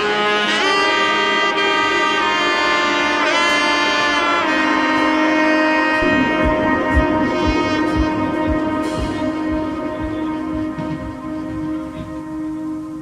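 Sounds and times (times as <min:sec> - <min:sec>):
background music sustained notes: 0:00.0 - 0:13.0.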